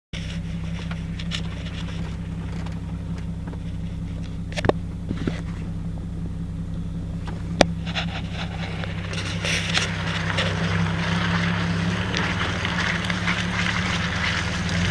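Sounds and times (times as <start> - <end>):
car engine running at low revs: 0.1 - 14.9.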